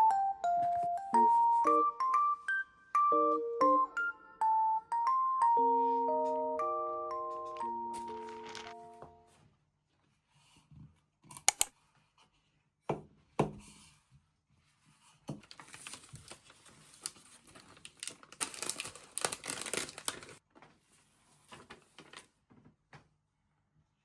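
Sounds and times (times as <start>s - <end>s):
wrapping crinkling and tearing: 8.1s - 8.8s, 15.4s - 20.4s
packaging clicks: 11.5s - 11.7s, 17.0s - 20.4s.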